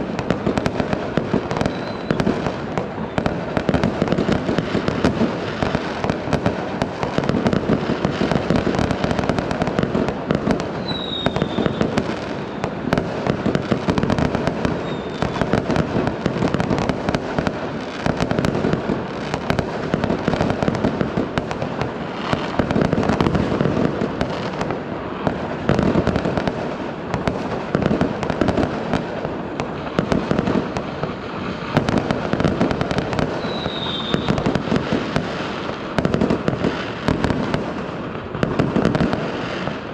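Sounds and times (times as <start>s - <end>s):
fireworks bangs and crackles: 0.0s - 39.9s
high whistle falling in pitch: 1.7s - 2.2s, 10.8s - 11.8s, 33.4s - 34.4s.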